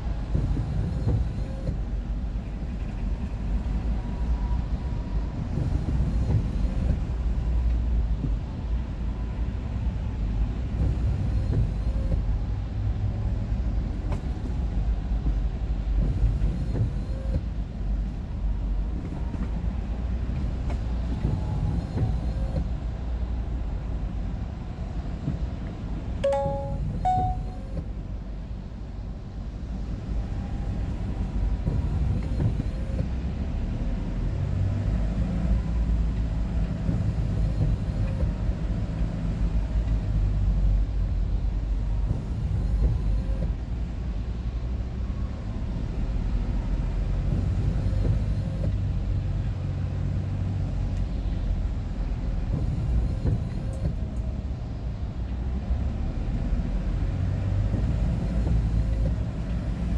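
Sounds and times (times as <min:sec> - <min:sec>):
tyres on road: 0:00.0 - 0:59.9.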